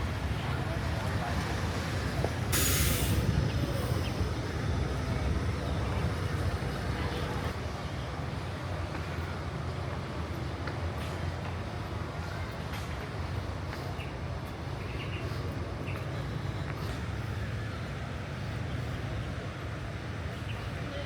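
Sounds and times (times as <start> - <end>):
street traffic rumble: 0.0 - 21.0
sharp hiss: 2.5 - 3.3.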